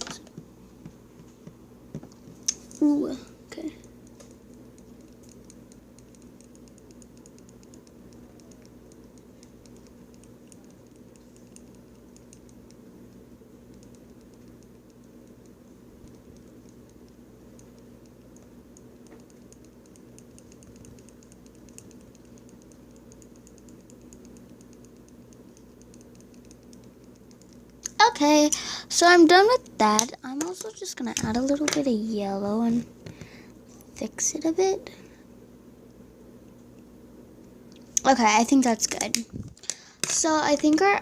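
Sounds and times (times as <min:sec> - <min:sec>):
gel pen ticks and scratches: 0:04.0 - 0:27.8, 0:40.0 - 0:40.9.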